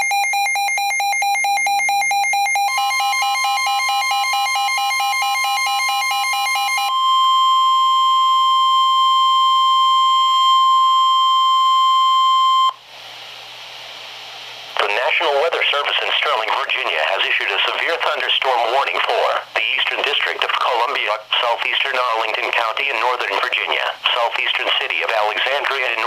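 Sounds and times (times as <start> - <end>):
steady warning alarm tone: 0.0 - 12.8.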